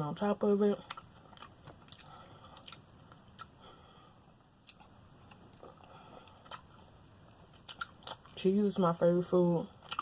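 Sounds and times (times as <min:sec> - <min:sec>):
person chewing food: 0:00.8 - 0:08.4, 0:09.7 - 0:10.0.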